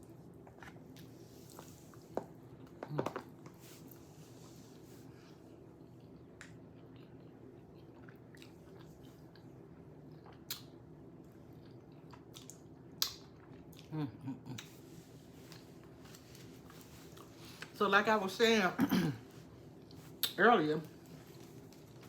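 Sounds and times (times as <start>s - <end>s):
low room hum: 0.0s - 22.0s
person chewing: 5.6s - 17.7s.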